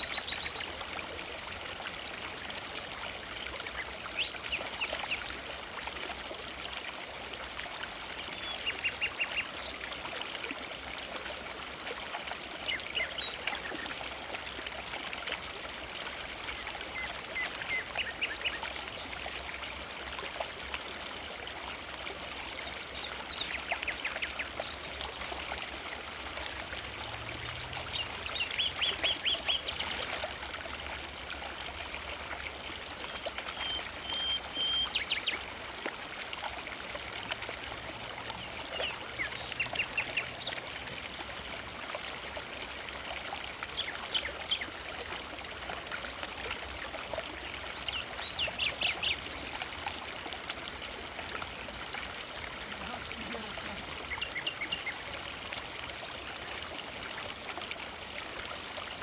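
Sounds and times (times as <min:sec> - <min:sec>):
river water rushing: 0:47.4 - 0:59.0.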